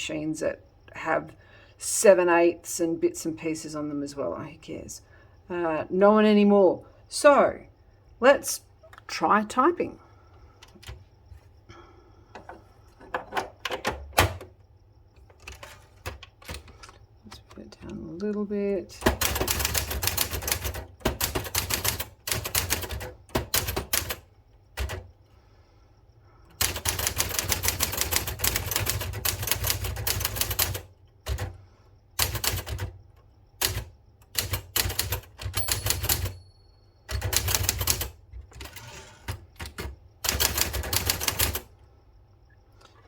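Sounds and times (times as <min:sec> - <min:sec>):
typewriter keys clicking: 0:26.6 - 0:31.5, 0:32.2 - 0:32.9, 0:33.6 - 0:36.4, 0:37.1 - 0:38.8, 0:39.6 - 0:41.6.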